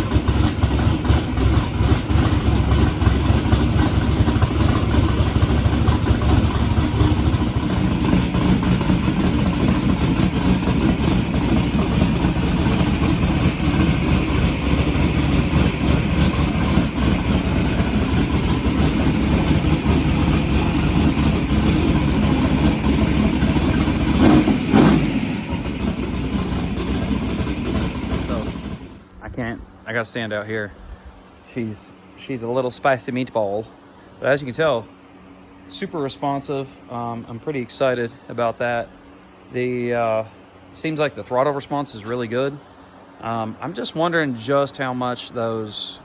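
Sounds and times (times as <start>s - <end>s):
engine revving: 0.0s - 29.1s
engine idling lumpily: 0.0s - 46.0s.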